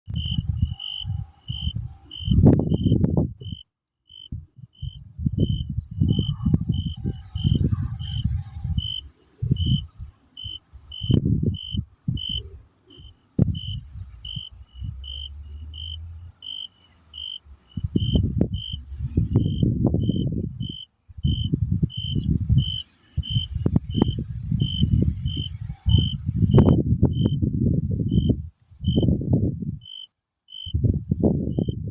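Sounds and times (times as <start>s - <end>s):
crickets chirping: 0.1s - 31.9s.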